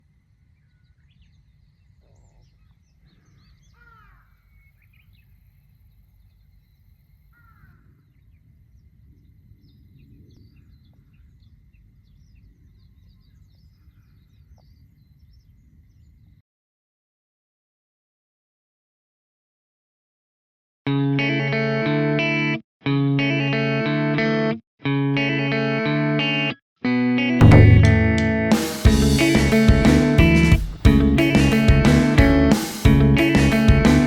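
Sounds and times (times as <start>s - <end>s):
crow-like caws: 3.8s - 4.4s, 7.3s - 8.0s
low steady rumble: 27.4s - 29.1s.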